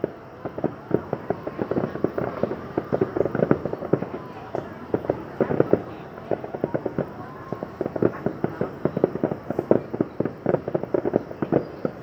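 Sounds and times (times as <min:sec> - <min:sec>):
fireworks barrage: 0:00.0 - 0:12.0.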